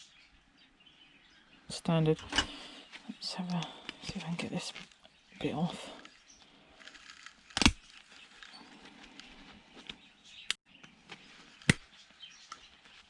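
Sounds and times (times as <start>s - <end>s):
faint ticking and handling: 2.1s - 10.1s.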